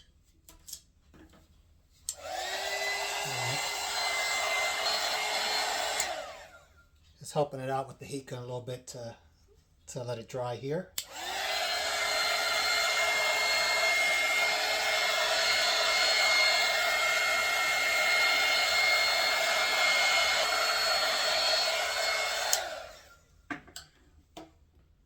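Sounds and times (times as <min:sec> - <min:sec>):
heat gun blowing air: 0:02.1 - 0:06.6, 0:11.0 - 0:23.2.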